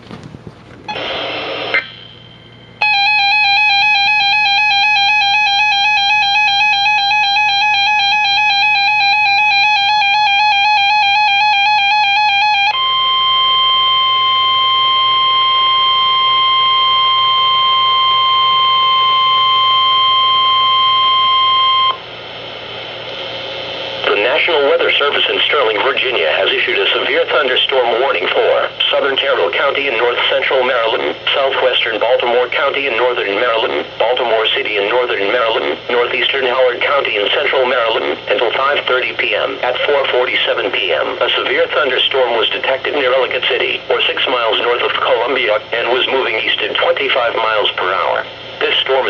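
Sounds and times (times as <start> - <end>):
steady warning alarm tone: 0.8 - 49.0
wavering two-tone attention signal: 0.9 - 22.0.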